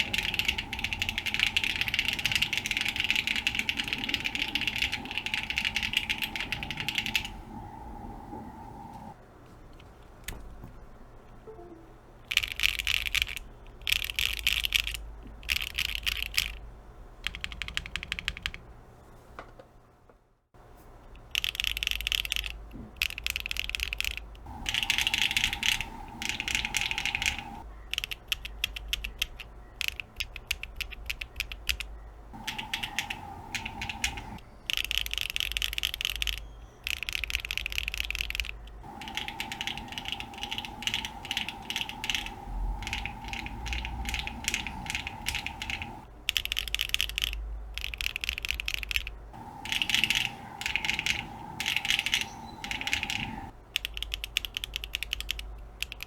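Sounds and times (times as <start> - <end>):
mechanical keyboard clacking: 0.0 - 8.5, 12.3 - 16.6, 17.2 - 18.7, 21.2 - 56.0.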